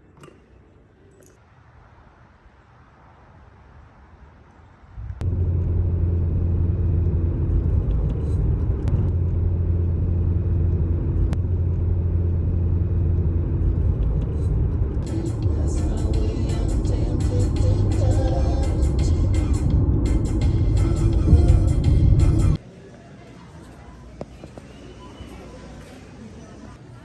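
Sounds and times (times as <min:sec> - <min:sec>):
low rumble: 0:05.0 - 0:22.6.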